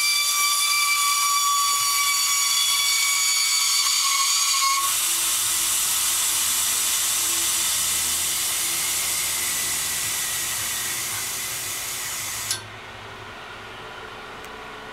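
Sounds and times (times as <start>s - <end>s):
air conditioner unit hissing: 0.0s - 14.9s.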